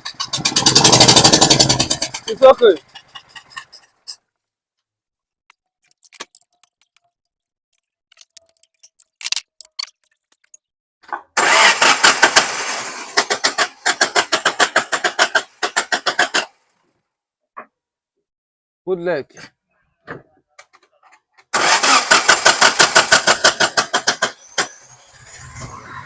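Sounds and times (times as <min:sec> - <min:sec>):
car engine starting: 0:00.0 - 0:02.4, 0:11.4 - 0:16.5, 0:21.6 - 0:26.0
misfiring engine running roughly: 0:00.0 - 0:03.6, 0:11.4 - 0:16.4, 0:21.6 - 0:24.9.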